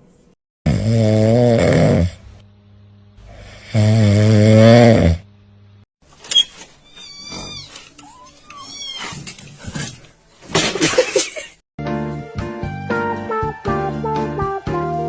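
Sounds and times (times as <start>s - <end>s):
cat crying roughly: 6.9s - 9.2s
cat meowing: 6.9s - 9.2s
music: 11.8s - 15.0s.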